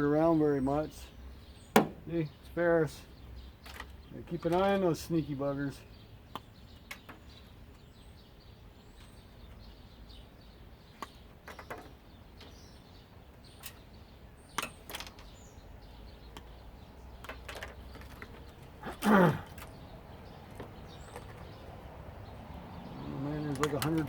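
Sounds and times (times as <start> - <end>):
bird chirps: 0.0 - 24.0
knocks: 1.7 - 2.0
light clicks of parts handled: 23.4 - 24.0.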